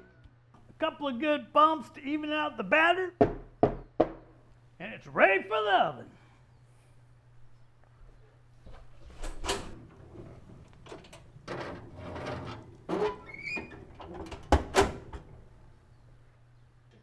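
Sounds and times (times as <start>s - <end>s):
oven door opening: 8.6s - 15.7s
oven door banging shut: 9.1s - 15.5s.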